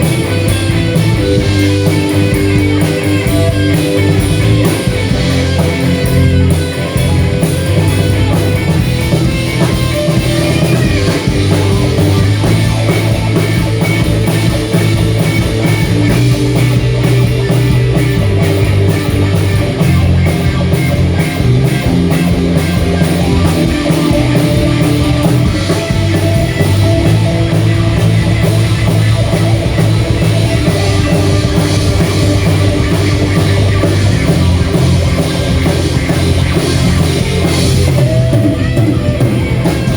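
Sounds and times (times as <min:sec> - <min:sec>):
bass guitar: 0:00.0 - 0:39.9
drum kit steady beat: 0:00.0 - 0:39.9
loud electric guitar: 0:00.0 - 0:39.9.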